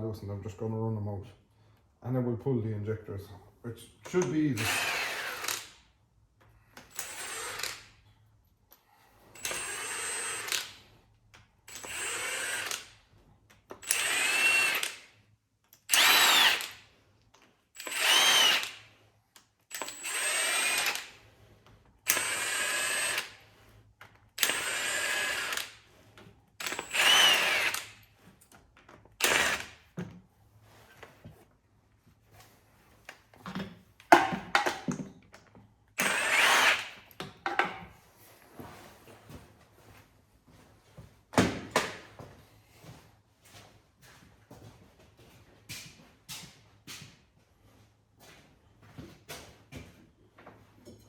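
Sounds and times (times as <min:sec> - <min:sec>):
power tool motor whining: 0:04.6 - 0:05.8, 0:06.9 - 0:07.9, 0:09.4 - 0:10.8, 0:11.7 - 0:12.9, 0:13.8 - 0:15.1, 0:15.9 - 0:16.8, 0:17.8 - 0:18.9, 0:19.7 - 0:21.2, 0:22.0 - 0:23.5, 0:24.4 - 0:25.8, 0:26.6 - 0:28.1, 0:29.2 - 0:29.8, 0:36.0 - 0:37.0.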